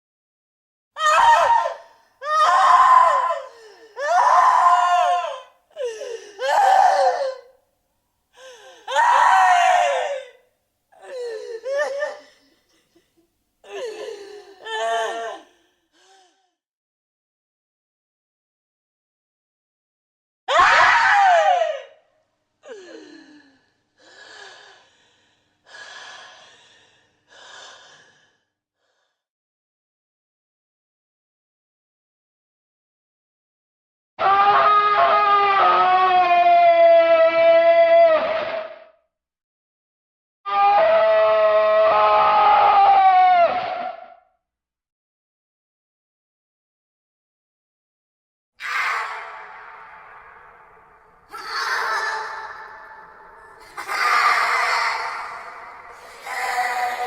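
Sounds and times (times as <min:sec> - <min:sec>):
person screaming: 0:01.0 - 0:07.4, 0:40.5 - 0:43.6, 0:51.3 - 0:57.0
breathy gasps: 0:03.5 - 0:04.0, 0:05.8 - 0:06.4, 0:08.4 - 0:08.9, 0:11.0 - 0:14.7, 0:15.4 - 0:16.6, 0:22.6 - 0:29.2.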